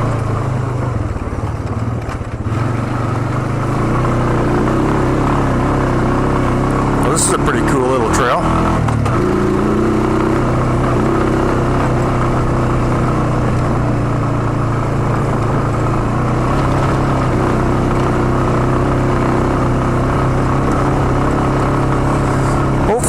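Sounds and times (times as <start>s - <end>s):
atv engine running: 0.0s - 23.0s.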